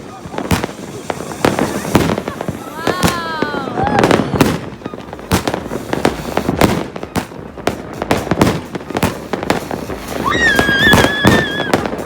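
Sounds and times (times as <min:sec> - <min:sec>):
fireworks banging and crackling: 0:00.0 - 0:12.0
high firework whistle: 0:09.8 - 0:12.0.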